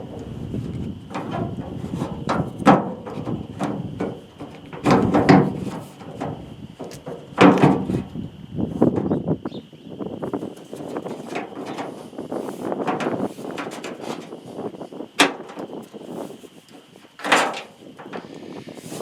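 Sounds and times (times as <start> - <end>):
tools clunking on tailgate latch: 0.0 - 8.2, 15.2 - 15.7, 17.2 - 18.3.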